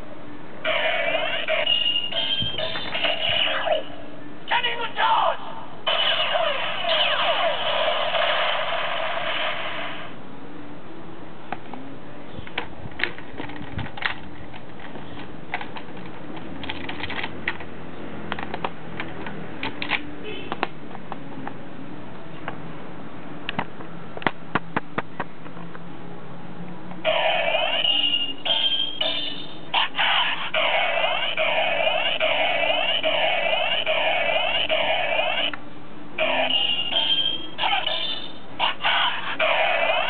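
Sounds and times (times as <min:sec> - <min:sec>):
toy electronic sound effect: 0:00.6 - 0:04.0, 0:05.9 - 0:10.0, 0:27.0 - 0:35.6, 0:36.2 - 0:40.0
plastic toy clicks and snaps: 0:18.3 - 0:21.2.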